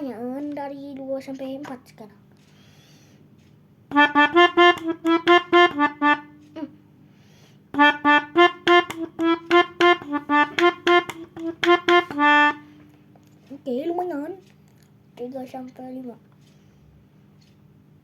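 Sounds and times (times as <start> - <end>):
melodica playing quick runs: 3.9 - 6.6, 7.8 - 12.9.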